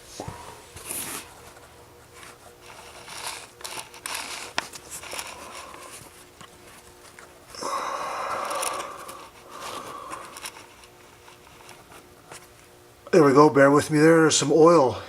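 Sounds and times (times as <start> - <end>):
handling scraping and rustling: 0.0 - 7.6.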